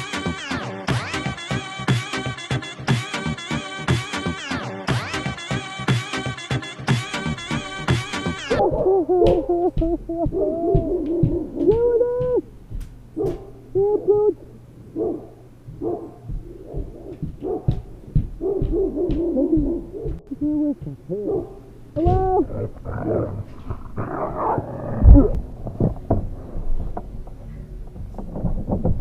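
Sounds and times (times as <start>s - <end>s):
dog barking and yelping: 8.5s - 12.3s, 13.2s - 14.4s, 15.0s - 20.2s, 21.1s - 21.6s.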